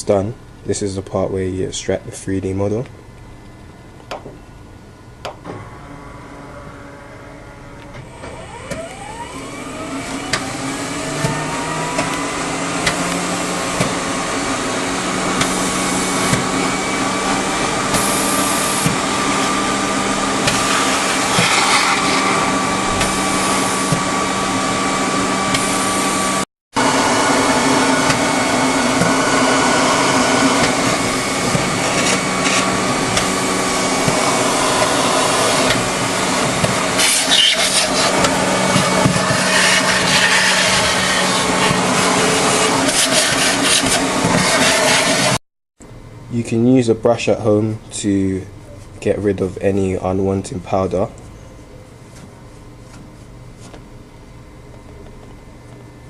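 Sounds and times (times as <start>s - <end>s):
vacuum motor whining: 5.4s - 45.4s.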